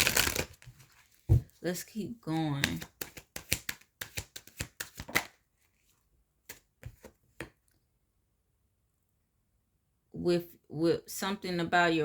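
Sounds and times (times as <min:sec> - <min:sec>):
cards being shuffled: 0:00.0 - 0:01.6, 0:02.6 - 0:07.5.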